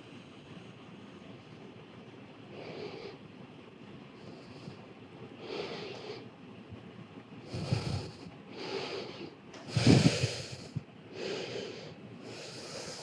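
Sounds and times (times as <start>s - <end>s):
person breathing deeply: 4.2s - 6.3s, 7.4s - 13.0s.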